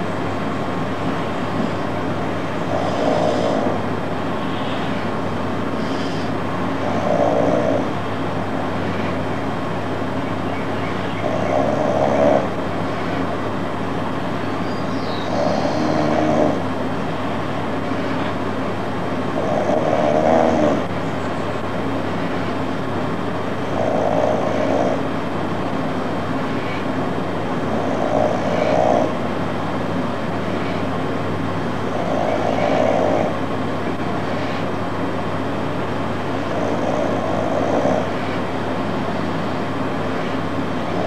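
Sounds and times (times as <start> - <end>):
person snoring: 2.6 - 3.8.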